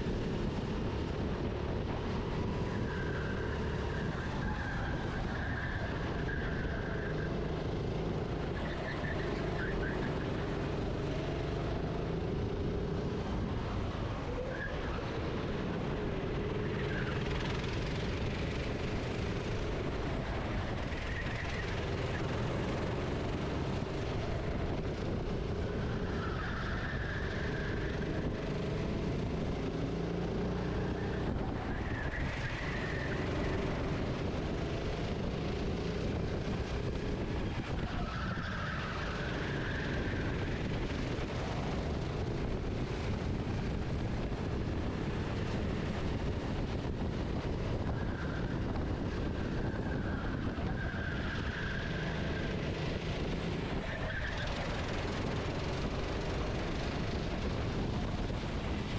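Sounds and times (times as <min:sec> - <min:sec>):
wind and track noise: 0:00.0 - 0:58.9
kart engine revving: 0:14.7 - 0:47.6, 0:48.3 - 0:58.9.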